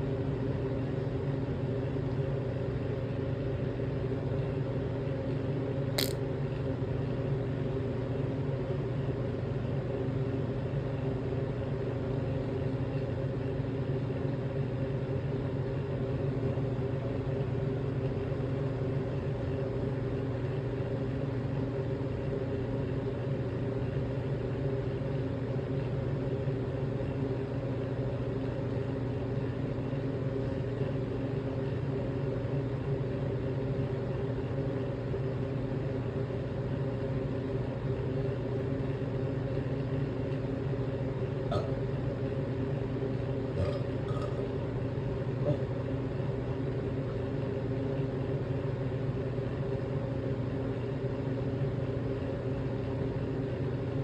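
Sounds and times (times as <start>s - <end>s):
steady low hum: 0.0s - 54.0s
sharp click: 6.0s - 6.2s.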